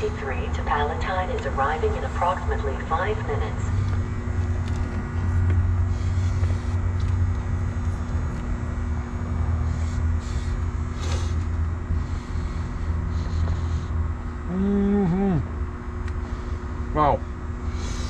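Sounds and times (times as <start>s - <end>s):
engine and traffic rumble: 0.0s - 18.0s
mechanical hum: 0.0s - 18.0s
person saying ooh: 14.5s - 15.5s.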